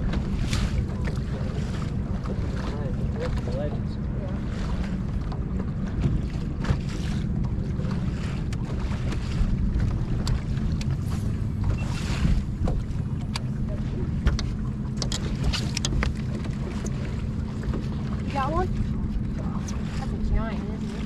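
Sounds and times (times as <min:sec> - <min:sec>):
water moving around hull: 0:00.0 - 0:21.0
wind rumbling on microphone: 0:00.0 - 0:21.0
small clicks and knocks: 0:14.2 - 0:16.2.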